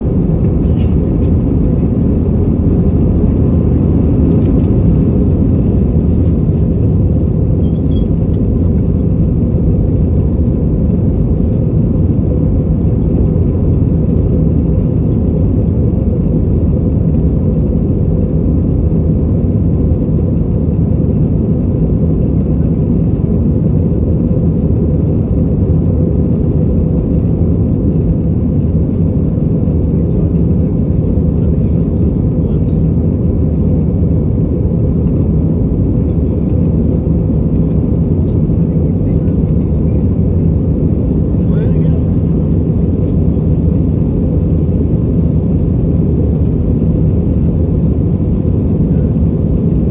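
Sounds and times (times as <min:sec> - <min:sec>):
vehicle rumbling: 0:00.0 - 0:24.0.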